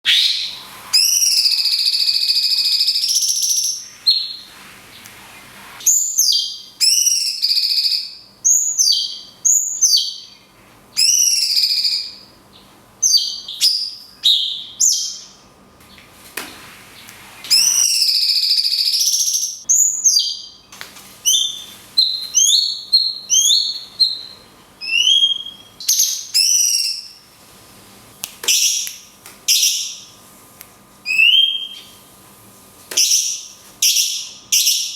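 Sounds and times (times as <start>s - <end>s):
bird whistling long notes: 0.0s - 4.4s, 17.5s - 20.4s
bird sweeping chirps: 0.0s - 10.2s, 17.5s - 20.5s.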